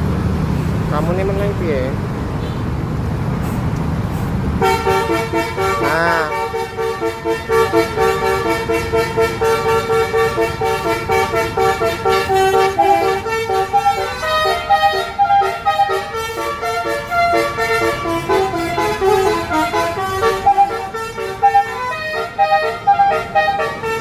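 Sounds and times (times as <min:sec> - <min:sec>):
low engine rumble: 0:00.0 - 0:24.0
musical bus horn melody: 0:04.6 - 0:24.0.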